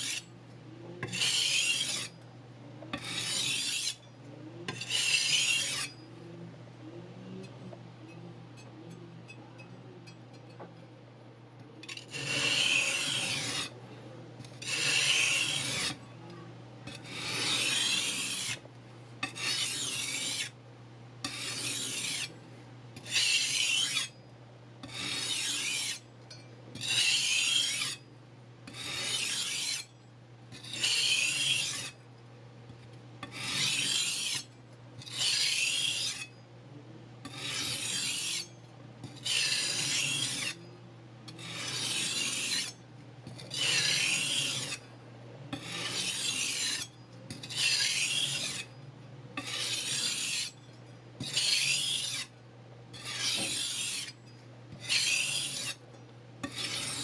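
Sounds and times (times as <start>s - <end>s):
knife rasping on sandpaper: 1.0s - 2.1s, 2.9s - 4.0s, 4.7s - 5.9s, 11.9s - 13.7s, 14.6s - 16.0s, 17.0s - 18.6s, 19.3s - 20.5s, 21.3s - 22.3s, 23.0s - 24.1s, 24.9s - 26.0s, 26.8s - 28.0s, 28.7s - 29.8s, 30.7s - 31.9s, 33.3s - 34.5s, 35.1s - 36.3s, 37.3s - 38.5s, 39.2s - 40.6s, 41.4s - 42.7s, 43.4s - 44.8s, 45.5s - 48.7s, 49.4s - 50.5s, 51.2s - 52.3s, 53.0s - 54.2s, 54.8s - 55.8s, 56.4s - 57.0s.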